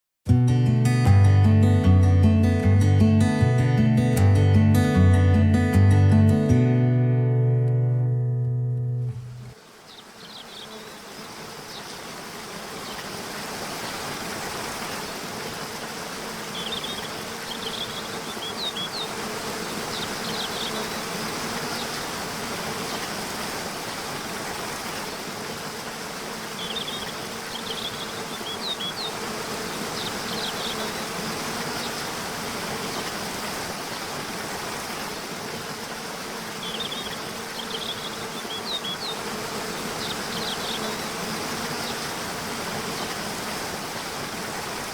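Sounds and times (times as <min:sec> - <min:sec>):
small birds chirping: 0:09.4 - 0:22.2, 0:25.7 - 0:32.2, 0:35.8 - 0:42.2.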